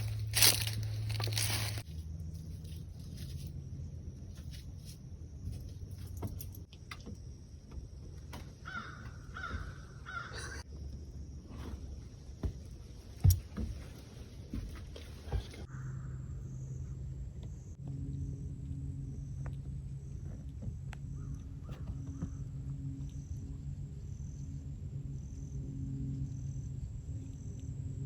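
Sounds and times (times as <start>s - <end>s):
low hum: 0.0s - 8.4s, 9.1s - 28.0s
crow cawing: 8.6s - 10.6s, 15.7s - 16.2s.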